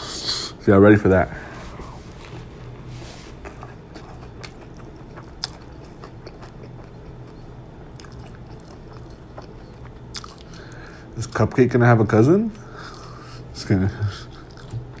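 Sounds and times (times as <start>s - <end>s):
faint low hum: 0.0s - 15.0s
chewing and crunching: 3.4s - 10.8s, 14.1s - 15.0s.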